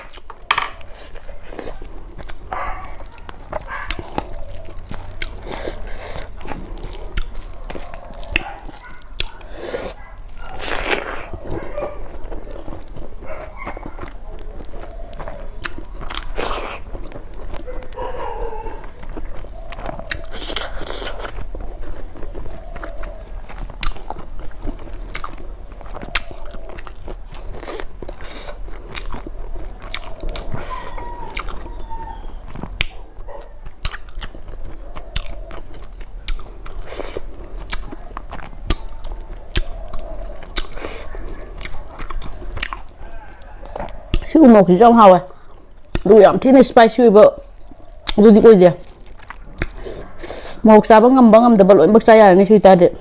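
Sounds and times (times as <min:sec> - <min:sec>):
chewing and crunching: 0:00.0 - 0:53.0
wet mouth clicks and lip smacks: 0:33.6 - 0:43.0, 0:45.4 - 0:46.1, 0:47.5 - 0:48.2, 0:48.9 - 0:50.6.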